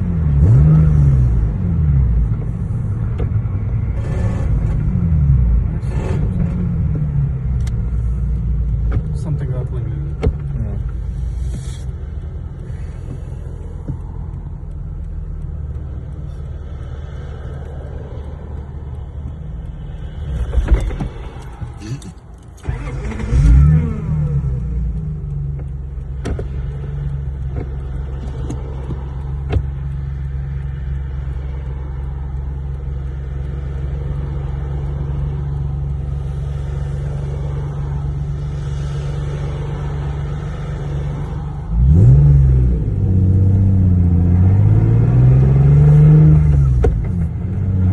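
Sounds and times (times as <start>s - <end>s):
car engine running while driving: 0.0s - 47.9s
engine revving: 0.0s - 47.9s.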